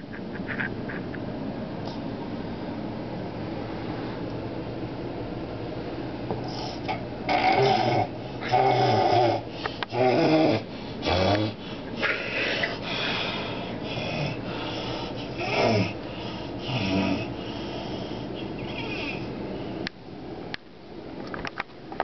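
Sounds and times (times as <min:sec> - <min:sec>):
man snoring loudly: 0:07.3 - 0:11.6, 0:13.8 - 0:14.7, 0:15.3 - 0:16.0, 0:16.6 - 0:19.2.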